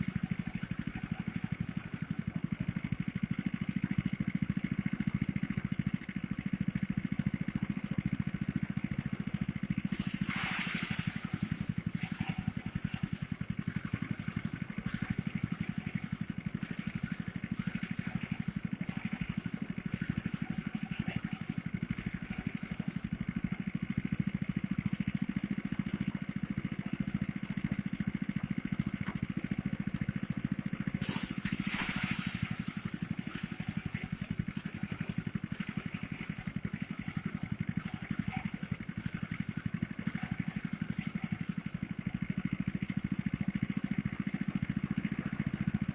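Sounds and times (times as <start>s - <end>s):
thresher engine running: 0.0s - 45.9s
short bursts of hiss: 9.9s - 11.7s, 31.0s - 32.9s.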